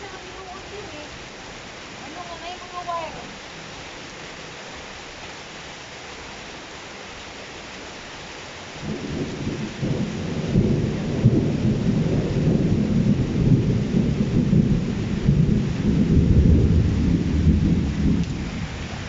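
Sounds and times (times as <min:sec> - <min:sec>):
rain hiss: 0:00.0 - 0:19.0
rolling thunder rumble: 0:08.8 - 0:19.0.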